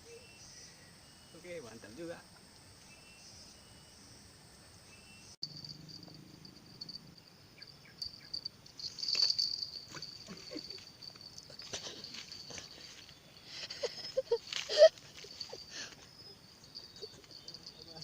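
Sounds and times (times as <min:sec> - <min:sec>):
insects droning: 0:00.0 - 0:18.0.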